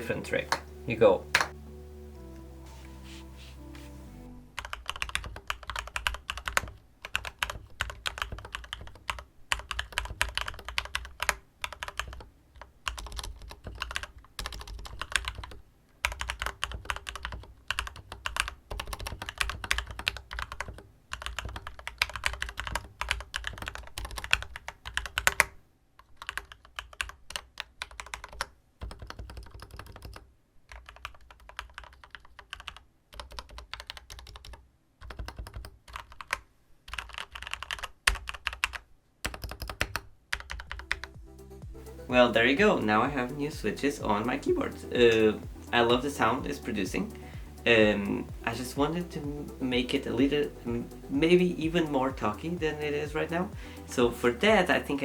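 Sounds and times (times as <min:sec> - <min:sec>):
typing on mechanical keyboard: 0:04.6 - 0:41.2.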